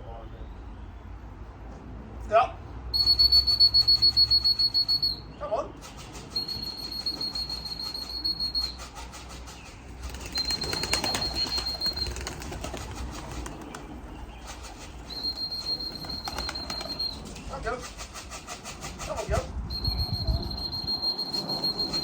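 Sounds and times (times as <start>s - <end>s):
pigeons flapping wings: 5.8s - 19.5s
flat high steady tone: 19.7s - 22.0s.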